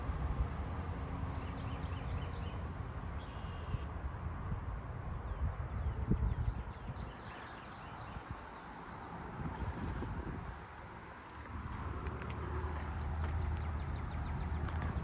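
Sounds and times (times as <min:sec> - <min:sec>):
steady low rumble: 0:07.8 - 0:15.0.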